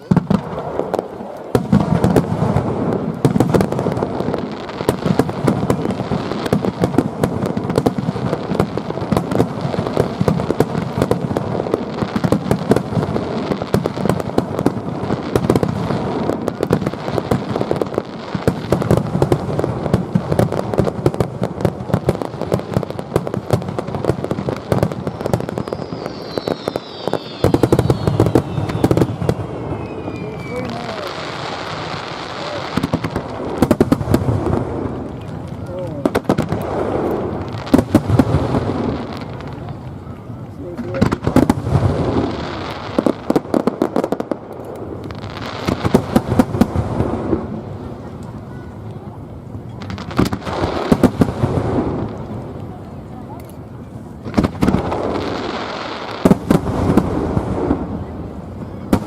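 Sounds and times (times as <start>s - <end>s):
fireworks bangs and crackles: 0.0s - 59.0s
falling firework whistle: 24.7s - 33.2s.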